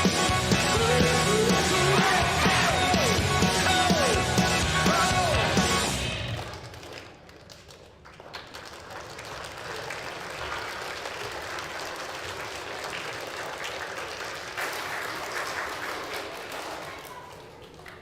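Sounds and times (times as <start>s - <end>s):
audience applauding: 5.8s - 18.0s.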